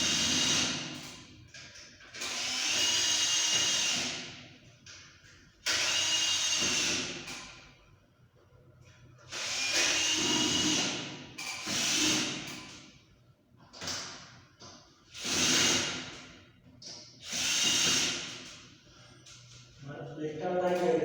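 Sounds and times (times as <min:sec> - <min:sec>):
power drill driving screws: 0:02.1 - 0:04.3, 0:05.6 - 0:07.2, 0:09.3 - 0:12.5, 0:15.1 - 0:16.1, 0:17.2 - 0:18.5.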